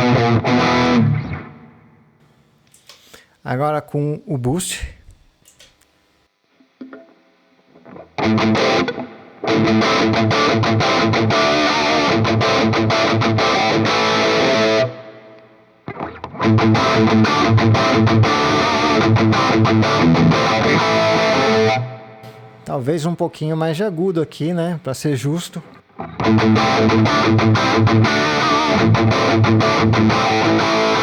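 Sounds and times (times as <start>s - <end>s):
distorted electric guitar riff: 0.0s - 1.4s, 7.8s - 23.0s, 25.6s - 31.0s.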